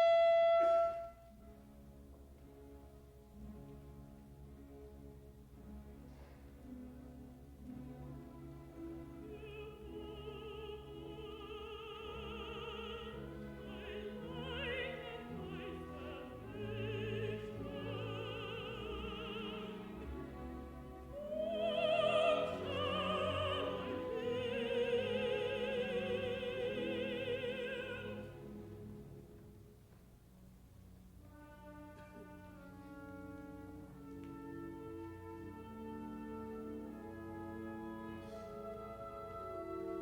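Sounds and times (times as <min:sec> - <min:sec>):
full orchestra playing: 0:00.0 - 0:29.8, 0:31.2 - 0:40.0
contralto singing with vibrato: 0:09.2 - 0:20.3, 0:21.1 - 0:28.4.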